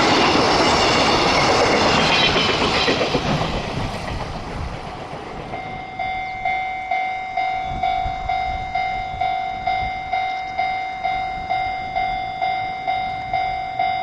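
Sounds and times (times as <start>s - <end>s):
freight train passing: 0.0s - 14.0s
level crossing alarm ringing: 5.5s - 14.0s.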